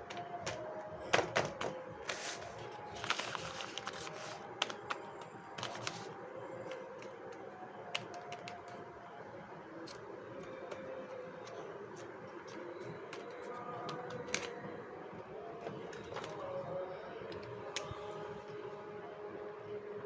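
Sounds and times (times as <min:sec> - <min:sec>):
plastic packaging clicks and taps: 0:00.0 - 0:08.8, 0:12.5 - 0:14.7
faint background music: 0:00.0 - 0:20.0
packaging crinkling: 0:01.7 - 0:08.8.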